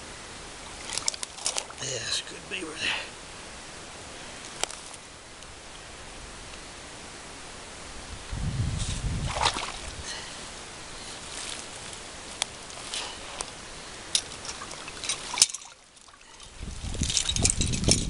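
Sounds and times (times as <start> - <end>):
water sloshing and trickling: 0.6 - 2.0, 9.2 - 10.4, 11.0 - 18.0.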